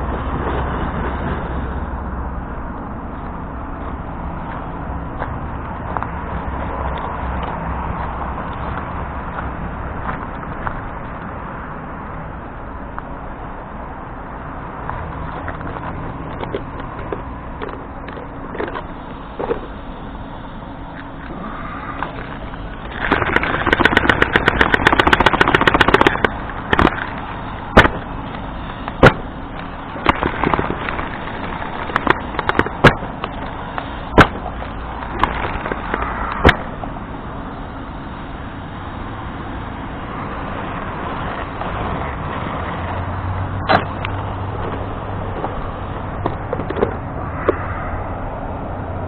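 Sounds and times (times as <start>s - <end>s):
loud sharp impacts: 21.4s - 33.4s, 34.0s - 36.8s
rapid rattling: 21.4s - 36.6s.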